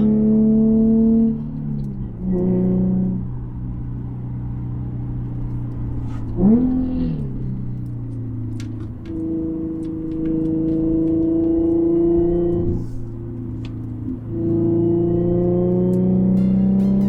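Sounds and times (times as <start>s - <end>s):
car engine running: 0.0s - 17.0s.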